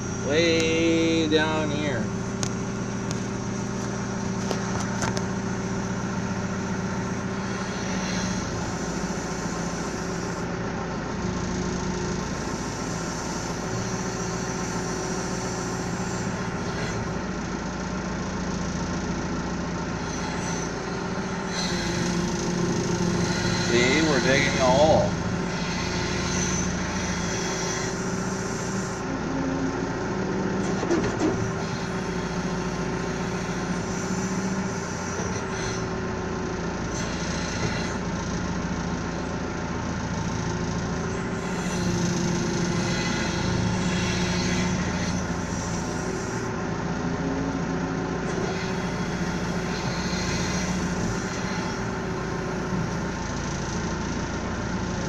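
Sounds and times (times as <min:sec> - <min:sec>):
backhoe engine running: 0:00.0 - 0:55.0.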